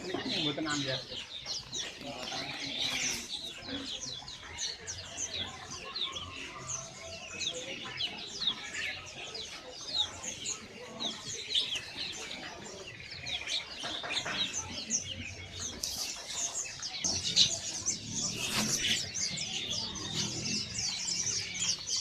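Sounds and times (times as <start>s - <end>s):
songbirds chirping and twittering: 0.0s - 22.0s.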